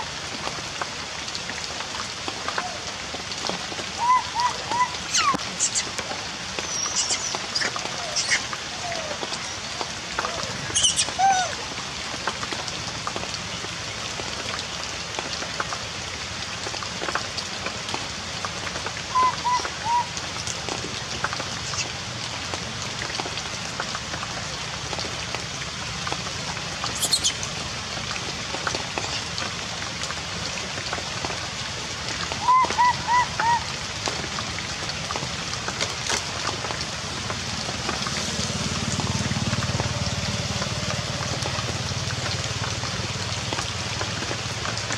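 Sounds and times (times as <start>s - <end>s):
heavy rain: 0.0s - 44.9s
short high calls: 4.0s - 5.9s, 6.7s - 8.4s, 10.7s - 11.6s.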